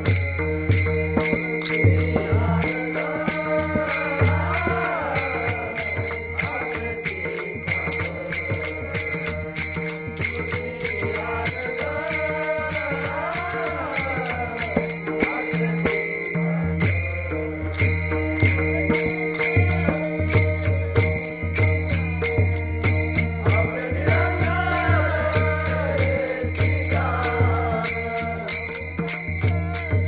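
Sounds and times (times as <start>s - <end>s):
small hand cymbals: 0.0s - 30.0s
person singing: 2.2s - 16.2s, 22.9s - 30.0s.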